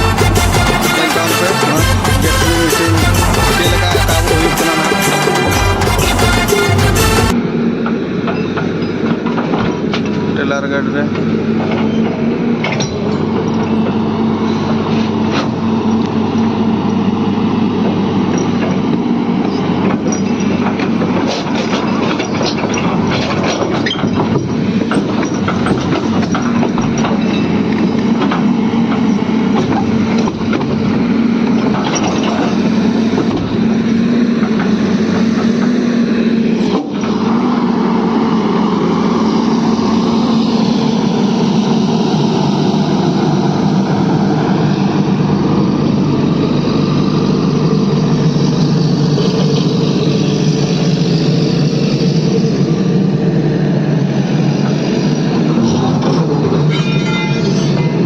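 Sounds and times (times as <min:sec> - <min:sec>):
excavator diesel engine humming: 0:00.0 - 0:58.0
rattling clatter: 0:17.9 - 0:35.7, 0:54.2 - 0:58.0.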